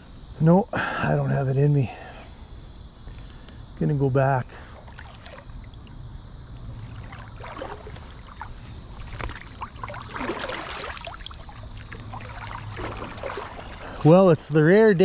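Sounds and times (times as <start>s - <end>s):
feet sloshing through water: 4.6s - 14.4s.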